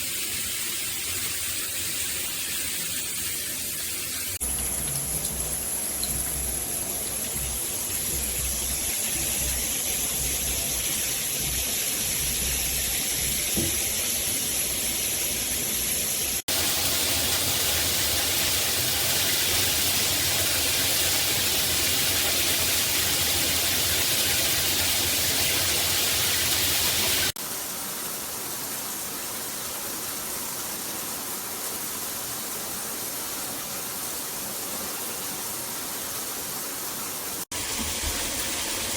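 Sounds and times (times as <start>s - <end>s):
water spraying from shower head: 0.0s - 27.4s, 37.4s - 38.9s.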